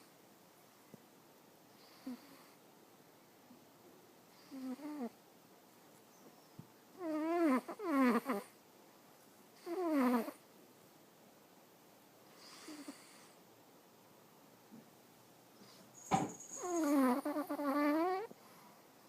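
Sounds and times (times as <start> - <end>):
cat snoring: 1.8 - 2.6, 4.3 - 5.2, 7.0 - 8.5, 9.6 - 10.4, 12.4 - 13.4, 16.5 - 18.7.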